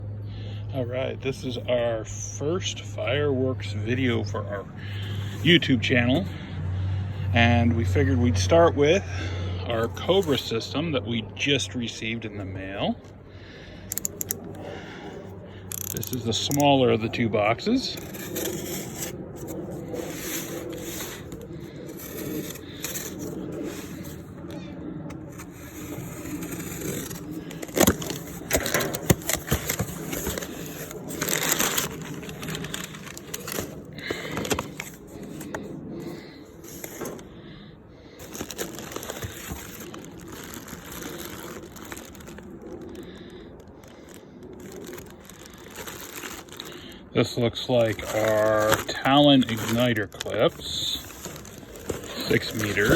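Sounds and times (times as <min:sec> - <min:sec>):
sharp clicks and crackles: 0:13.9 - 0:14.6, 0:15.6 - 0:16.8, 0:17.9 - 0:35.6
cardboard box rustling: 0:15.7 - 0:37.3, 0:38.2 - 0:42.5, 0:44.1 - 0:46.7, 0:47.7 - 0:52.9.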